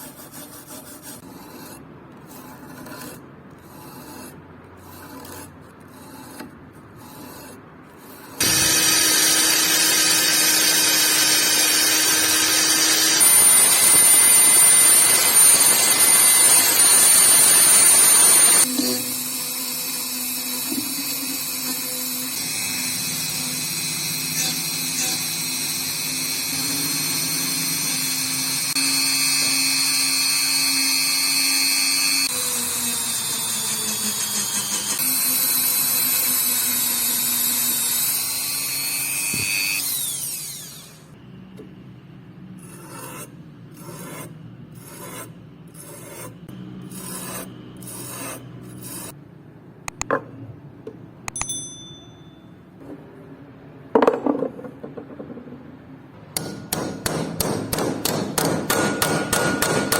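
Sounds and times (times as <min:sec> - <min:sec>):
filing strokes on metal: 0:00.0 - 0:10.4, 0:42.6 - 0:49.2
power tool spinning down: 0:08.4 - 0:41.1.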